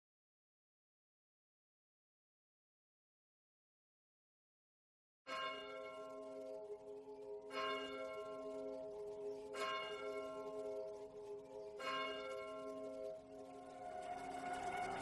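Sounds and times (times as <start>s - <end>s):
bell-like chimes ringing chord: 5.3s - 15.0s.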